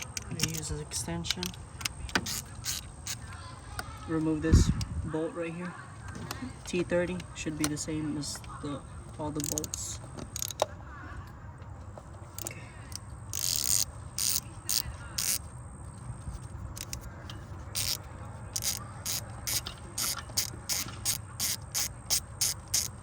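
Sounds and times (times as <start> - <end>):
hand ratchet clicking: 0.0 - 3.9, 9.4 - 10.7, 12.3 - 15.5, 16.8 - 23.0.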